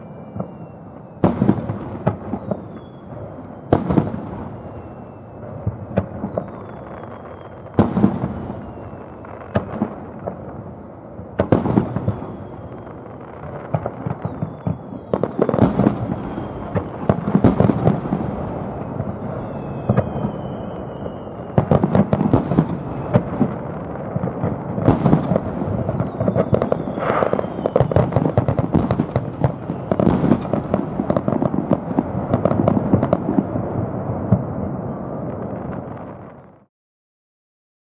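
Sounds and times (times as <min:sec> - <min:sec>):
fireworks booming and crackling: 0:00.0 - 0:36.7
whistling firework shells: 0:00.0 - 0:36.7.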